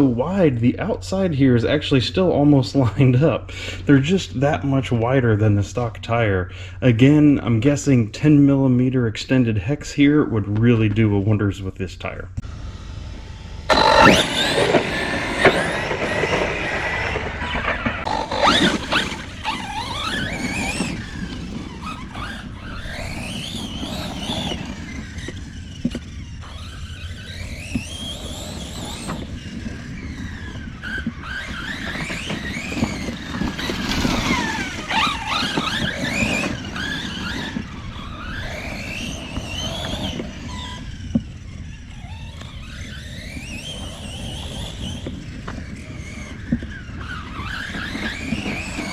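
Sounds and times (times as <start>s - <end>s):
tyres rumbling on ground: 0.0s - 48.9s
electric motor whining: 12.4s - 48.9s.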